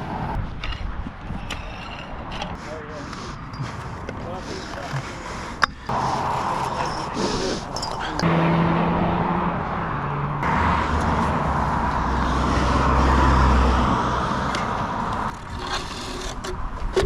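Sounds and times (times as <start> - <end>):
vehicle passing by: 5.9 - 15.3.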